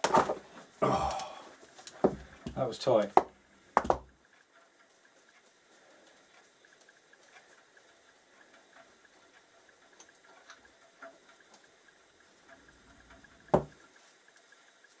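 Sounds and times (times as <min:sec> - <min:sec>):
object set down hard: 0:00.0 - 0:00.5, 0:02.0 - 0:02.6, 0:13.6 - 0:13.8.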